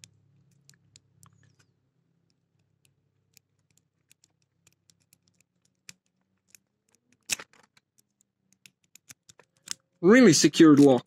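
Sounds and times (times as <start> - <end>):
lock pick clicking in padlock: 2.7 - 9.9.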